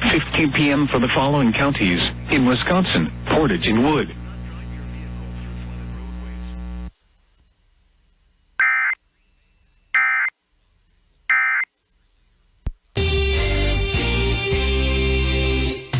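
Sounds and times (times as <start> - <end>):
steady buzzing hum: 0.0 - 14.4
digital data tone bursts: 8.6 - 9.0, 9.9 - 10.3, 11.3 - 11.7.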